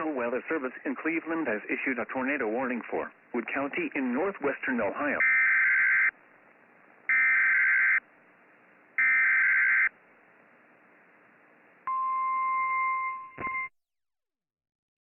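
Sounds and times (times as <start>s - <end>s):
steady weather radio alert tone: 4.8s - 6.1s, 7.1s - 8.0s, 9.0s - 9.9s.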